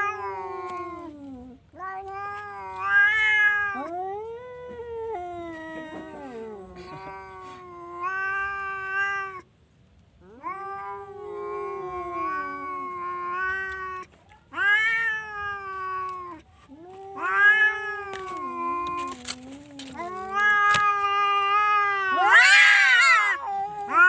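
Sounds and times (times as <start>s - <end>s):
cat yowling: 0.0s - 0.9s, 10.3s - 24.0s.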